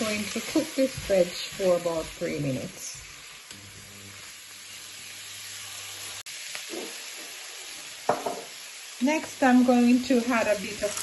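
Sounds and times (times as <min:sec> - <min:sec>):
food sizzling in hot oil: 0:00.0 - 0:11.0.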